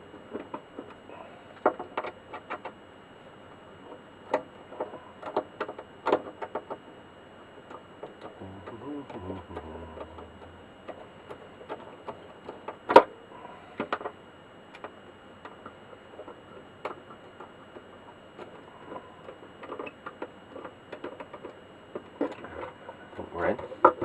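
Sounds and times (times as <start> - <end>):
low hum: 7.6 - 11.8.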